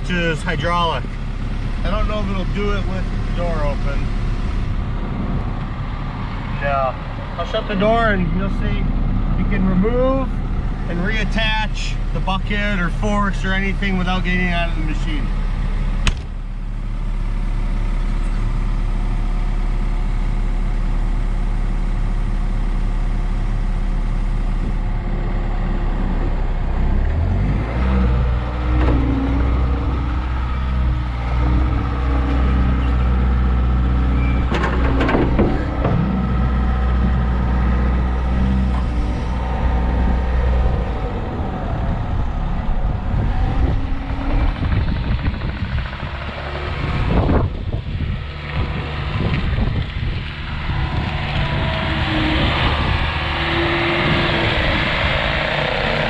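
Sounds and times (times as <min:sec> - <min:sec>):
diesel engine running: 0:00.0 - 0:56.0
metal clanks: 0:34.2 - 0:37.4.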